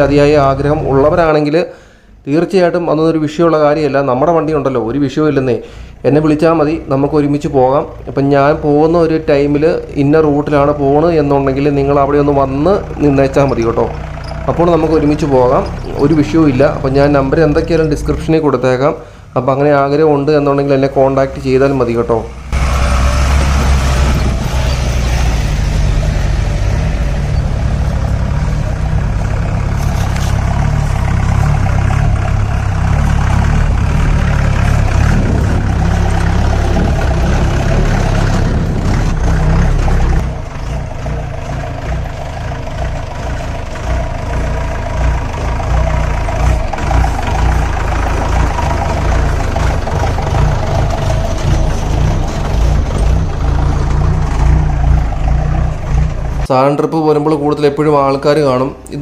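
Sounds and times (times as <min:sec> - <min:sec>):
jeep engine running: 0:00.0 - 0:59.0.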